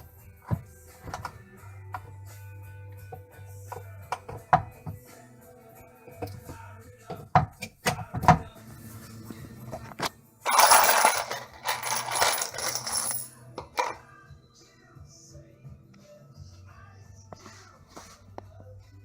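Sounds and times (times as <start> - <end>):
faint background music: 0.0 - 19.0
clinks of screws and parts: 10.5 - 14.0.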